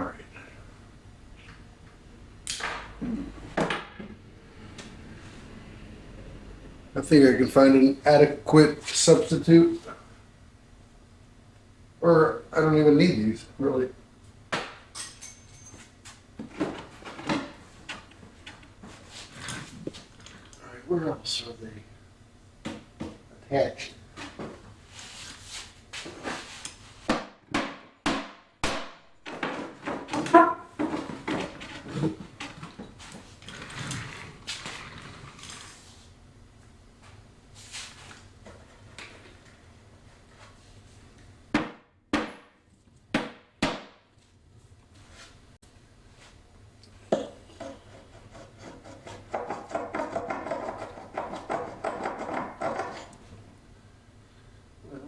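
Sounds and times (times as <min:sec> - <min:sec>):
metal tools knocking and clattering: 0:14.9 - 0:15.9
short metallic ring: 0:15.0 - 0:16.0.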